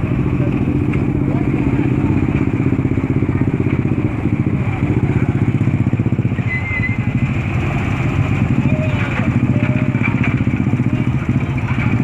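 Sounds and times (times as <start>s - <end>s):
engine running steadily: 0.0s - 12.0s
high squeak: 6.4s - 7.2s.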